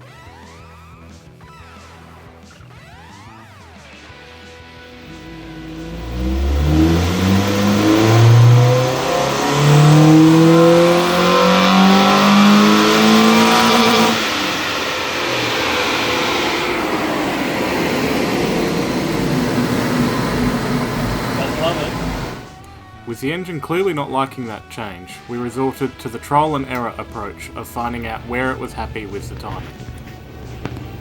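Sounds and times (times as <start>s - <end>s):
car engine at full throttle: 4.8s - 22.8s.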